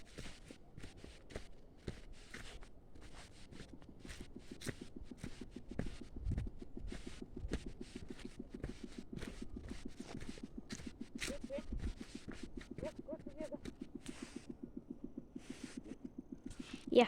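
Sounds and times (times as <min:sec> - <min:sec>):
footsteps and rustling on trail: 0:00.0 - 0:17.0
fast low pulsing: 0:02.8 - 0:17.0.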